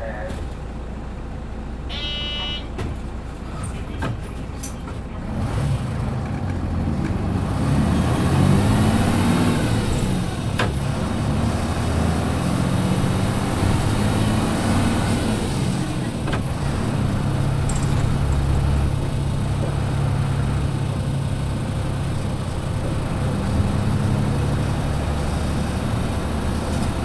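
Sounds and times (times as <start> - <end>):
bus engine accelerating: 0.0 - 27.0
sharp clicks and rattles: 16.2 - 19.6.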